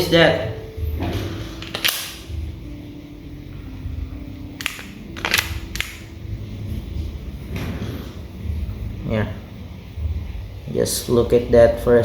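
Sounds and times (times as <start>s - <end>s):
magazine clicking into pistol: 1.6s - 2.2s, 4.6s - 6.0s.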